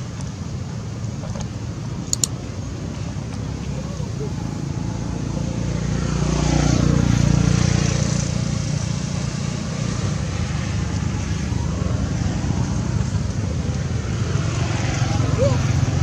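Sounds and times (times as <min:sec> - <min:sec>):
vehicle engine running: 0:00.0 - 0:16.0.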